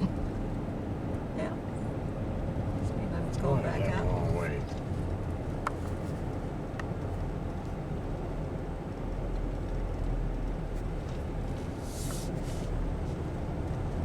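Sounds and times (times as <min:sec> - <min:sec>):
engine and tyre rumble inside cab: 0:00.0 - 0:14.0.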